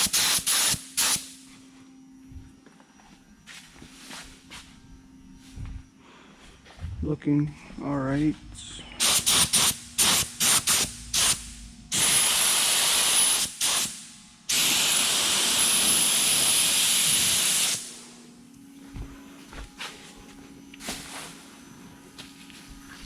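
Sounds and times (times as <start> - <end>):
spray gun hissing: 0.0 - 1.3, 9.0 - 11.4, 12.0 - 17.9.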